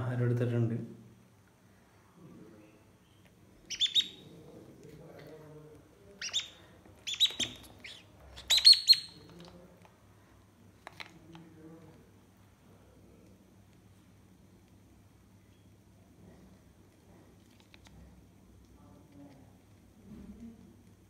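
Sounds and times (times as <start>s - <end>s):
parrot chick calling: 3.7s - 4.3s, 6.2s - 9.3s.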